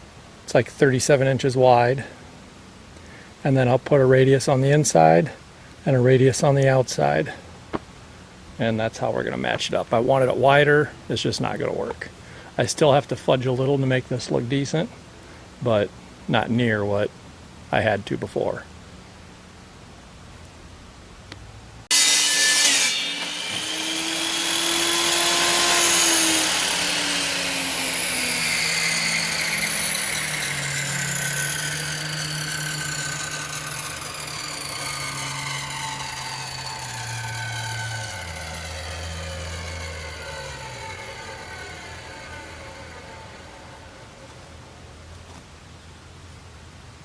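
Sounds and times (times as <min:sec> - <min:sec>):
electric power saw cutting: 0:21.9 - 0:44.6
saw motor spinning down: 0:21.9 - 0:44.8.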